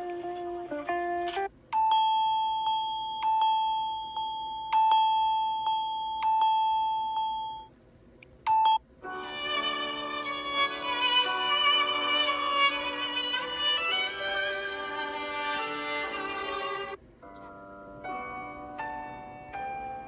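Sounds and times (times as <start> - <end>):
fuller phone ringtone: 1.7 - 7.7, 8.5 - 17.0
high ringtone tone: 1.8 - 7.7, 8.5 - 17.0.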